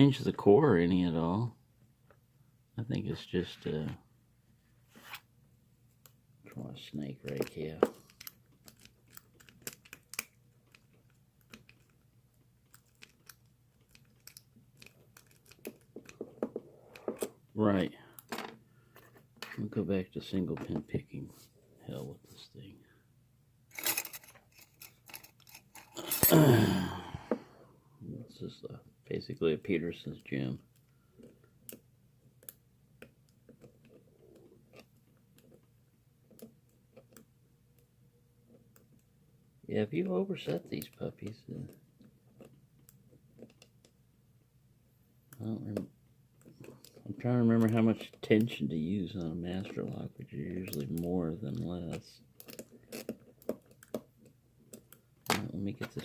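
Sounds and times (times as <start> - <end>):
lock rake clicking and scratching: 7.2 - 16.2, 23.7 - 26.3, 51.9 - 55.0
lock pick clicks and scrapes: 23.7 - 26.3, 52.4 - 55.0.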